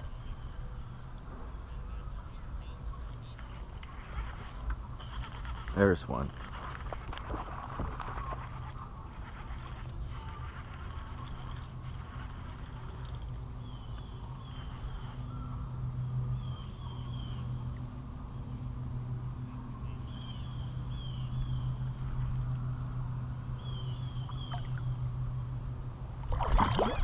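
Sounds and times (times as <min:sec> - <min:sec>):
bird chirping: 0:23.6 - 0:25.0.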